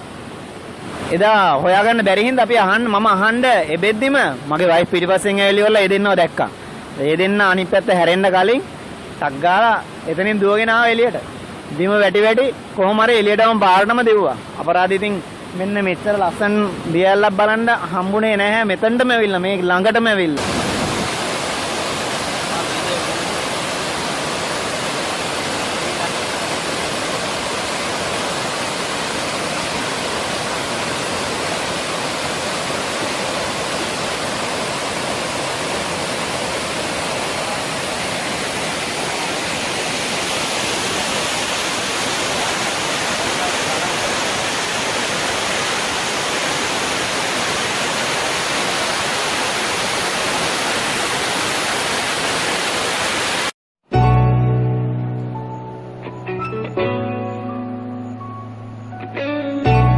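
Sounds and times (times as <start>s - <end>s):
waterfall pouring: 20.4s - 53.5s.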